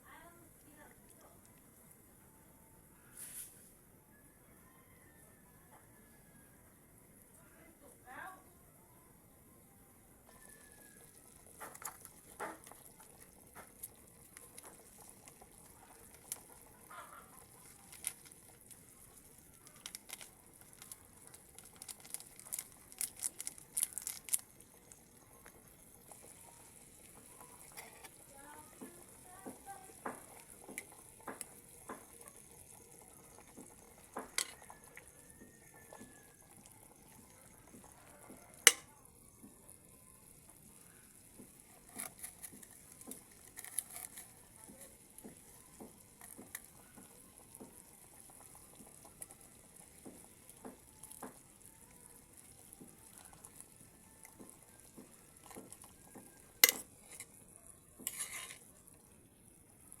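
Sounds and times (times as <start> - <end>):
food sizzling in a pan: 10.3 - 60.0
metal utensil knocking pan: 34.2 - 34.6, 38.6 - 38.9, 56.6 - 56.9.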